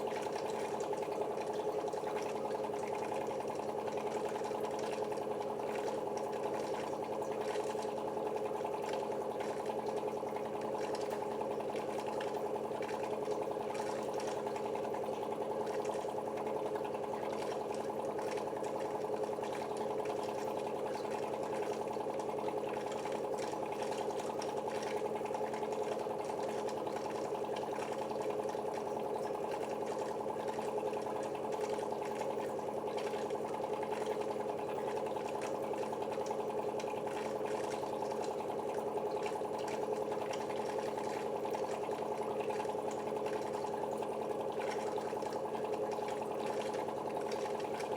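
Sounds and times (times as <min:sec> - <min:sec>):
faint water trickling: 0:00.0 - 0:47.9
water purifier pump motor humming: 0:00.0 - 0:47.9.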